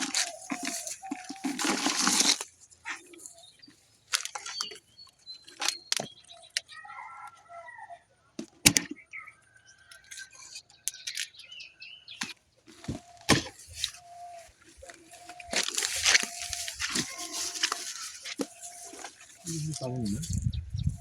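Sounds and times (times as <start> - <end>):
short bird calls: 13.0 - 20.4.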